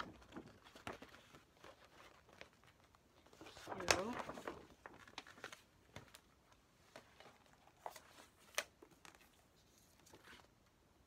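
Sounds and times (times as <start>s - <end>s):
paper rustling and tapping: 0.0s - 10.5s.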